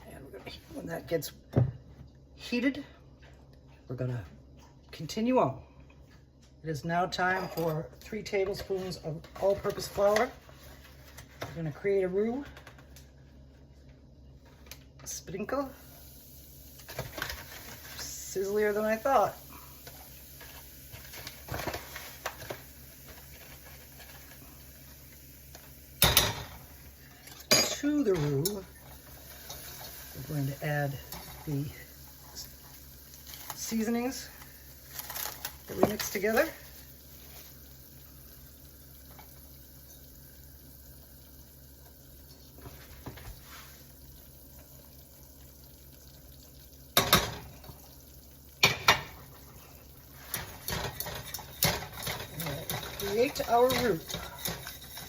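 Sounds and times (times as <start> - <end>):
roux sizzling in a pan: 15.2 - 55.0
utensil clattering against pan: 50.3 - 55.0.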